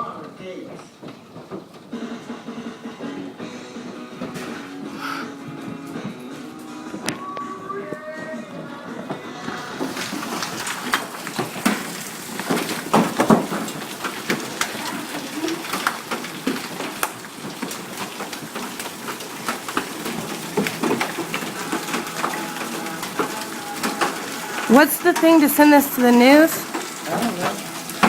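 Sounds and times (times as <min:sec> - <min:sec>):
steady hiss: 0:00.0 - 0:28.0
hailstones pelting hard surfaces: 0:09.0 - 0:28.0.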